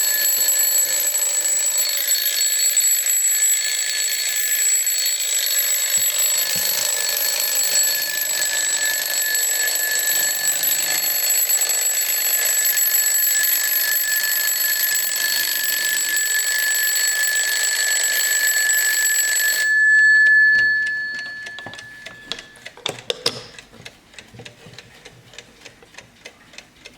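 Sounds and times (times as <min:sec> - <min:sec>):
clock alarm bell ringing: 0:00.0 - 0:22.8
clock clicks: 0:20.2 - 0:26.9
clock ticking: 0:20.2 - 0:26.9.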